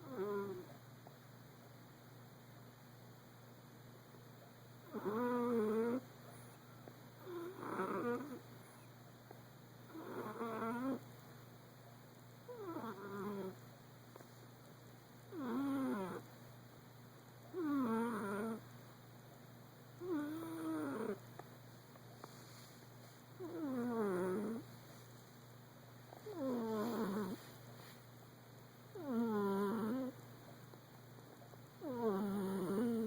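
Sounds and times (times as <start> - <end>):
cat snoring: 0.0 - 0.7, 4.8 - 6.0, 7.2 - 8.8, 9.9 - 11.0, 12.5 - 13.6, 15.3 - 16.2, 17.5 - 18.6, 20.0 - 21.2, 23.4 - 24.7, 26.2 - 27.4, 28.9 - 30.2, 31.8 - 33.0.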